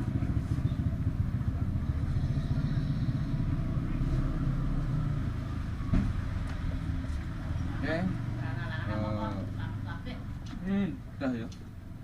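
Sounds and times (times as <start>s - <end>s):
motorcycle engines idling: 0.0s - 12.0s.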